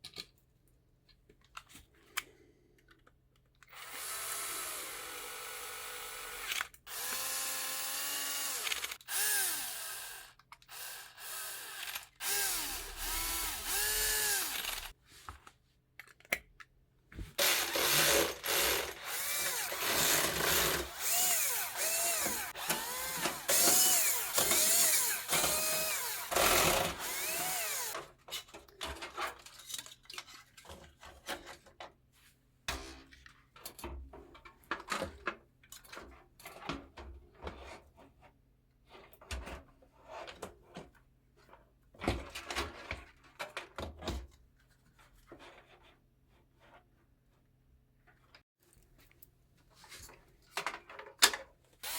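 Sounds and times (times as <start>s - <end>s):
clicks and handling noise: 0.0s - 3.8s, 13.1s - 17.5s
electric screwdriver motor whirring: 3.7s - 14.9s, 17.4s - 28.0s.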